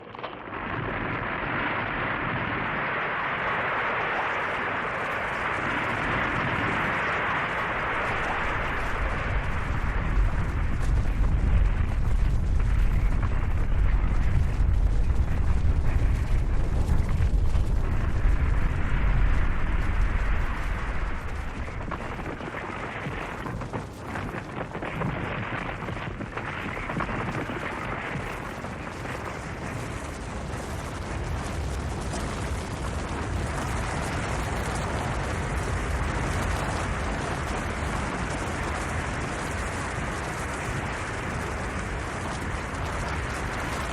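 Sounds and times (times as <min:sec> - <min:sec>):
avalanche rumble: 0:00.0 - 0:43.9.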